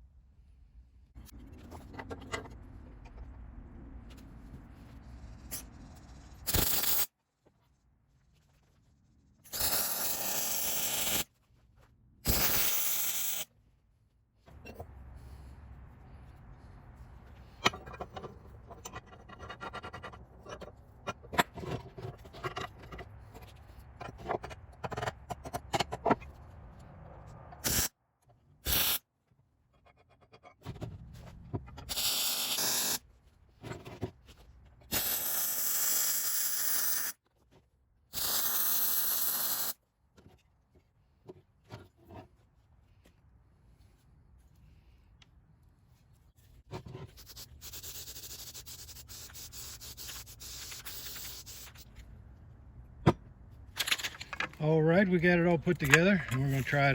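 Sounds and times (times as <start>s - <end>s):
metal clinks and scraping: 17.4s - 26.4s, 53.7s - 54.6s.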